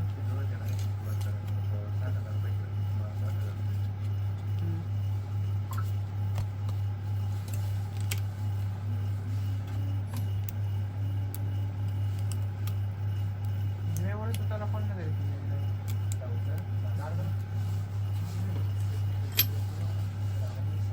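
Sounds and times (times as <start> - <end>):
low hum: 0.0 - 20.9
tools clicking and tapping: 19.3 - 19.6.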